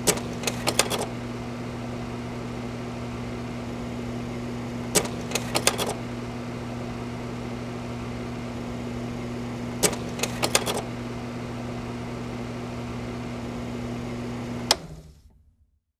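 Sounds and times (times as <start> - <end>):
projector fan motor humming: 0.0 - 15.3
slide mechanism clicking: 14.6 - 15.2.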